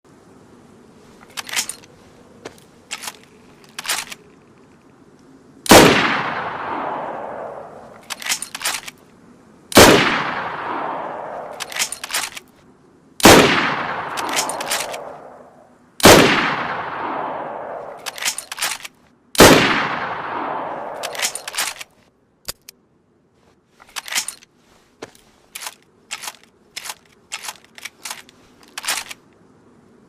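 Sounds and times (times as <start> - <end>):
rifle bolt clicks: 2.9 - 4.4, 7.3 - 9.0, 10.6 - 12.5, 14.1 - 15.3, 17.8 - 19.5, 20.4 - 22.8, 25.6 - 29.3
rifle shots with echo: 5.7 - 7.9, 9.7 - 12.0, 13.2 - 18.7, 19.4 - 21.8.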